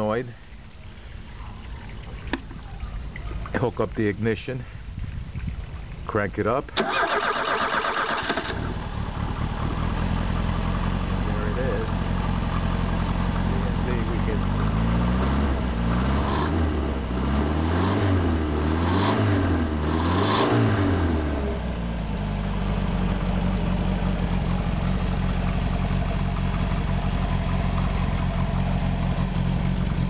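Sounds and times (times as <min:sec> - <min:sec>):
engine revving and idling: 0:07.0 - 0:30.0.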